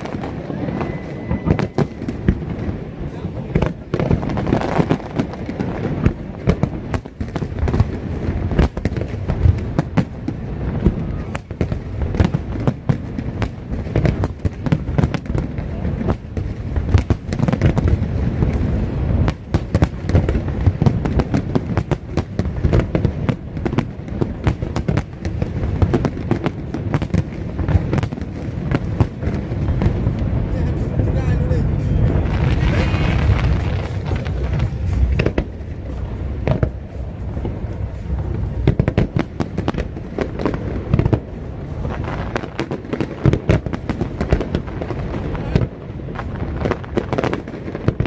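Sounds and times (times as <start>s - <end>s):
fireworks bangs and crackles: 0.0s - 48.0s
low rumble of booming shells: 32.0s - 48.0s.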